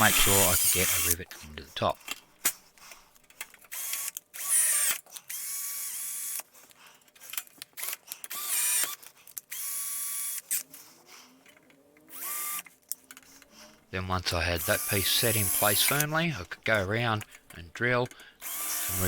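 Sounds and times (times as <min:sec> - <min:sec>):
electric drill whining: 0:00.0 - 0:01.2, 0:03.7 - 0:06.4, 0:07.8 - 0:10.7, 0:12.1 - 0:12.7, 0:14.6 - 0:16.1, 0:18.4 - 0:19.0.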